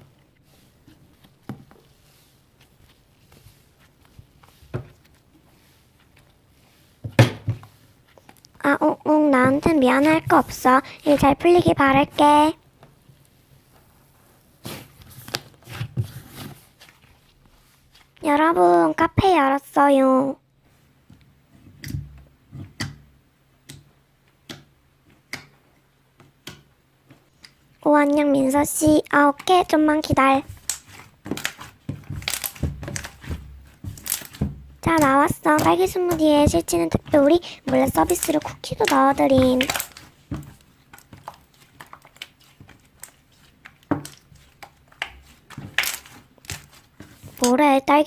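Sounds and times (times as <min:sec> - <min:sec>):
rustling: 0:00.0 - 0:08.6, 0:29.6 - 0:47.4
small clicks and taps: 0:23.6 - 0:25.6.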